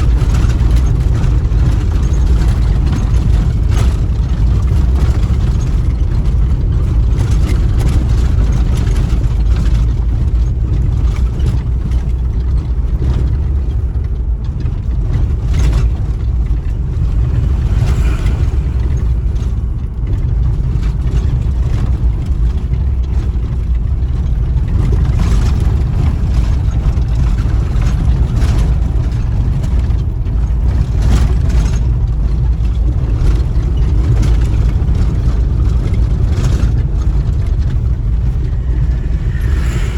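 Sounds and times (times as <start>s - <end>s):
vehicle engine and road noise: 0.0s - 39.9s.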